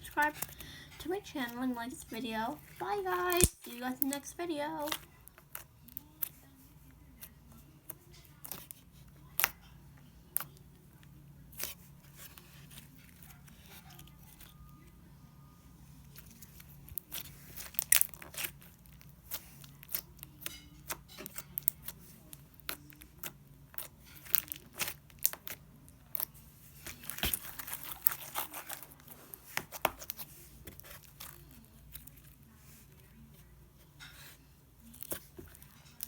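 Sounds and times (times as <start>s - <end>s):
slime squishing and crackling: 2.7s - 4.1s, 16.4s - 32.2s.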